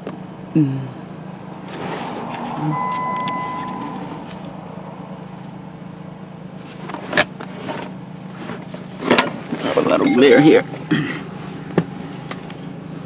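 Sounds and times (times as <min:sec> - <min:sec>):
vehicle running hum: 0:00.0 - 0:13.0
electronic beep: 0:02.2 - 0:05.2, 0:10.0 - 0:10.8.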